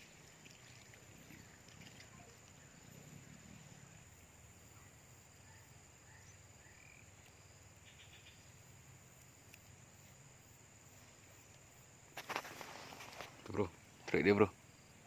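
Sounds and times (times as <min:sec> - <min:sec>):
faint chirps: 0:00.0 - 0:10.2.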